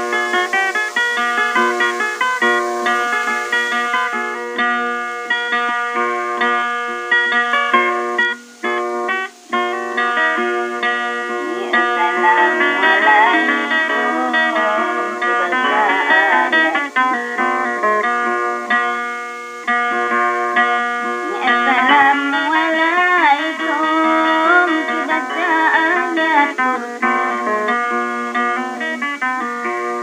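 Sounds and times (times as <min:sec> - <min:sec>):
plucked guitar melody: 0:00.0 - 0:30.0.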